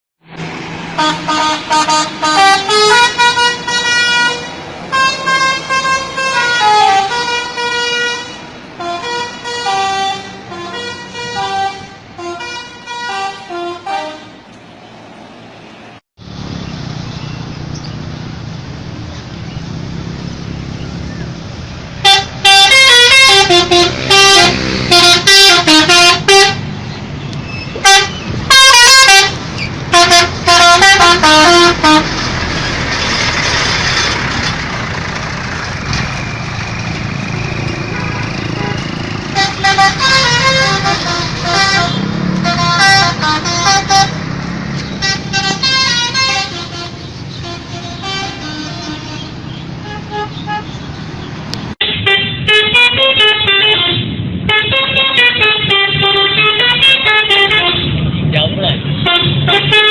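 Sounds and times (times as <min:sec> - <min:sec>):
vehicle rumble: 0:00.2 - 0:59.9
musical bus horn: 0:00.9 - 0:14.5, 0:22.0 - 0:26.8, 0:27.6 - 0:32.6, 0:37.4 - 0:50.9, 0:51.8 - 0:58.0, 0:59.0 - 0:59.9.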